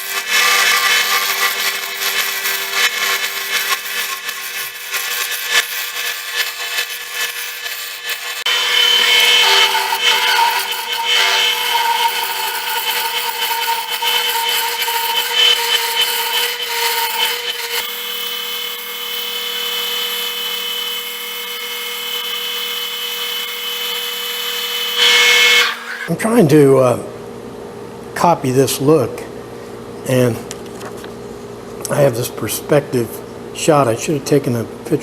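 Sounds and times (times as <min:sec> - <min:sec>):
power tool cutting wood: 0:00.0 - 0:26.2
scraping and rubbing: 0:08.1 - 0:17.8.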